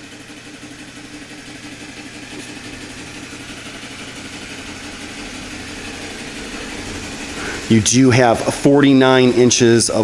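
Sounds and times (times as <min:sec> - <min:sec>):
machinery hum with pulsing tone: 0:00.0 - 0:10.0.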